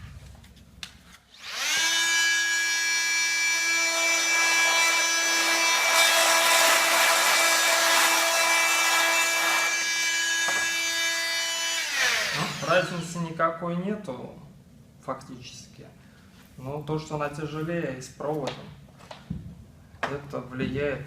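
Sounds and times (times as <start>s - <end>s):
oscillating multi-tool whine: 1.3s - 12.9s.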